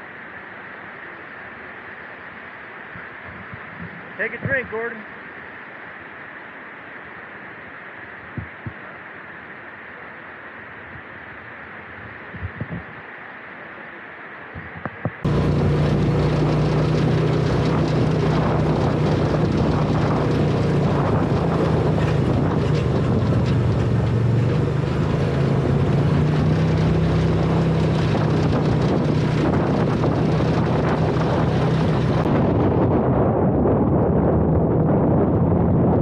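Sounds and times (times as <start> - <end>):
wind buffeting microphone: 3.0 - 4.8, 8.2 - 8.8, 11.9 - 13.0, 14.6 - 36.0
vehicle engine running: 14.6 - 33.0.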